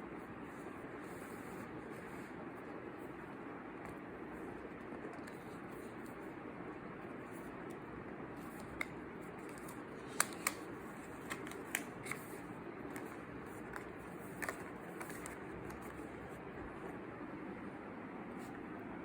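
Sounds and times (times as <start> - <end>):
cardboard and plastic packaging clicks: 8.6 - 12.3.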